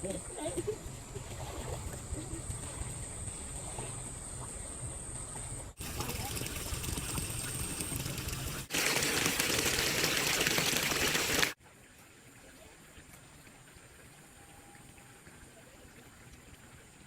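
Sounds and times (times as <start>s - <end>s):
running water rushing: 5.8s - 17.0s.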